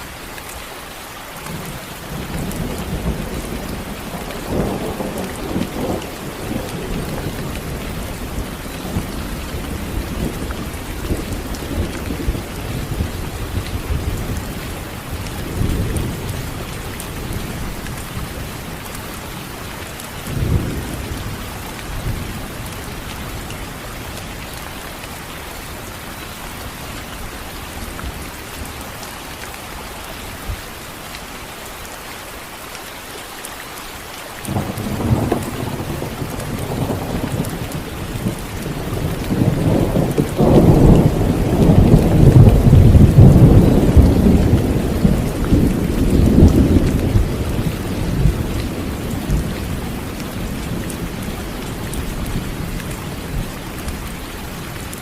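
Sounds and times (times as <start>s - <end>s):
heavy rain hissing: 0.0s - 55.0s
thunder rumbling: 1.5s - 24.4s, 34.5s - 54.8s
sharp thunderclap: 34.5s - 49.5s.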